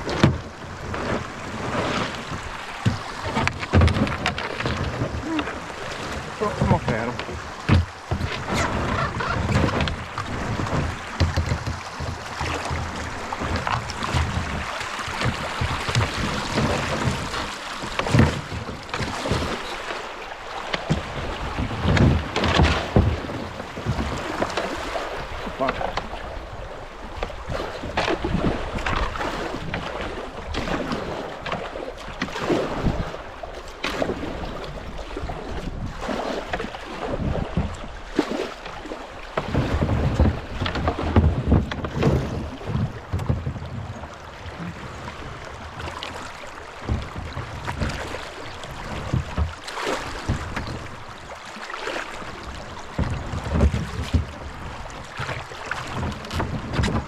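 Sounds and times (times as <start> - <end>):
paddle strokes splashing water: 0.0 - 57.0.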